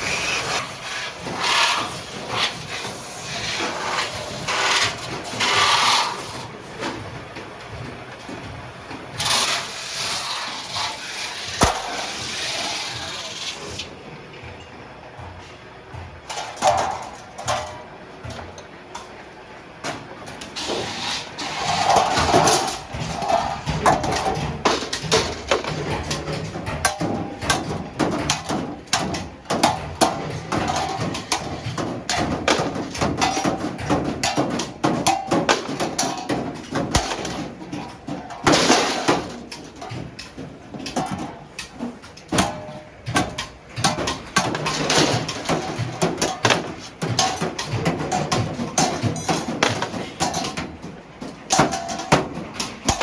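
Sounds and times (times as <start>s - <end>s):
hammer striking iron plate: 11.6s - 12.4s
metallic knocking and clanking: 21.5s - 53.0s.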